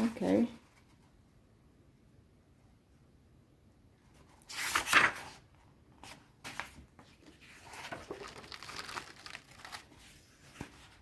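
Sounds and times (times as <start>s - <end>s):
book pages leafed through: 4.1s - 5.4s, 6.0s - 11.0s
paper and plastic rustling: 6.0s - 11.0s.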